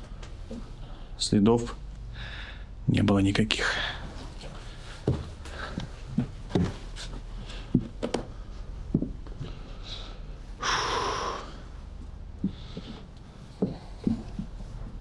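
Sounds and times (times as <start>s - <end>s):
footsteps in a small room: 0.0s - 1.1s, 4.0s - 10.6s, 11.6s - 15.0s
loud breath through the nose: 9.7s - 11.6s.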